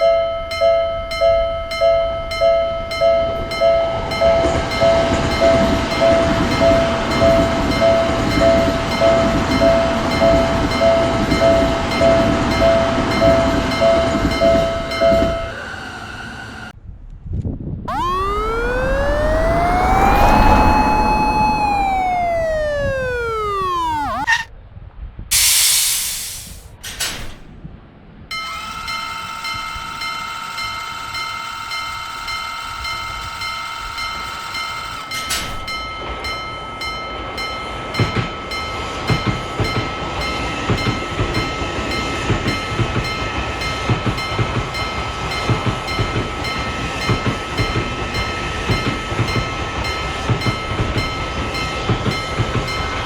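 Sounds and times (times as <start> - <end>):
falling horn-like glide: 17.9 - 24.3
level-crossing alarm ringing: 17.9 - 24.3
short hiss: 25.3 - 26.7.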